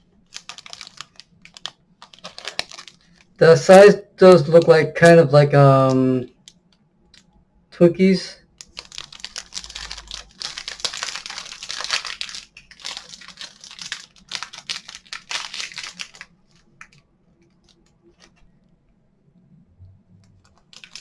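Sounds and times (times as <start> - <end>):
plastic wrapper crinkling: 0.2 - 3.4, 8.5 - 18.4, 20.4 - 21.0.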